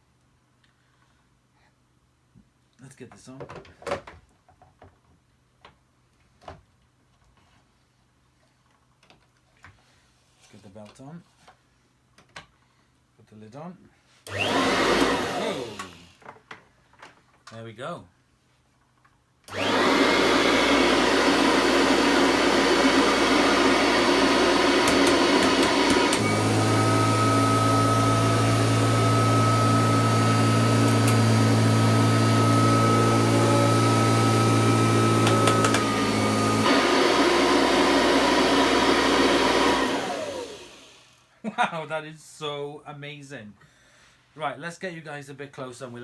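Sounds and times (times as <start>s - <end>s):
upright vacuum cleaner whirring: 14.3s - 16.2s, 19.5s - 41.2s.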